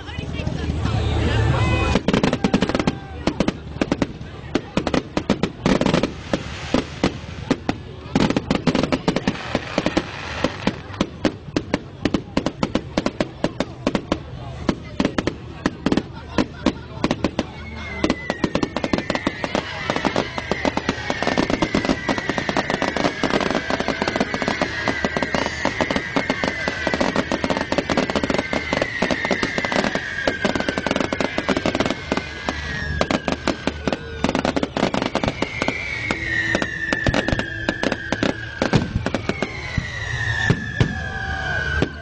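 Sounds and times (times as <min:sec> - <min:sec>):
fireworks crackling: 0:00.0 - 0:42.0
firework whistles sliding down: 0:04.8 - 0:11.3, 0:17.0 - 0:42.0.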